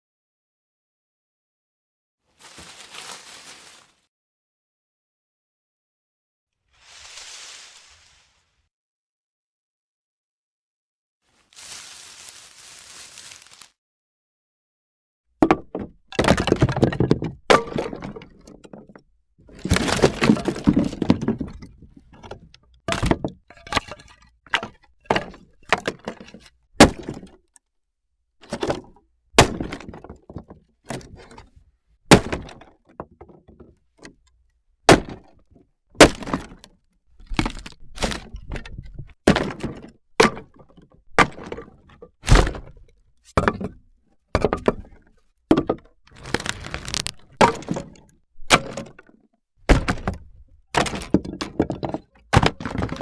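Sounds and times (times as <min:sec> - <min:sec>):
logs clattering onto pile: 0:15.4 - 0:27.4, 0:34.9 - 0:43.8, 0:44.4 - 0:49.1, 0:50.8 - 0:53.0
wood being split: 0:15.5 - 0:27.4, 0:28.5 - 0:31.5, 0:32.1 - 0:32.8, 0:34.9 - 0:42.8, 0:44.4 - 0:49.0, 0:49.7 - 0:53.0.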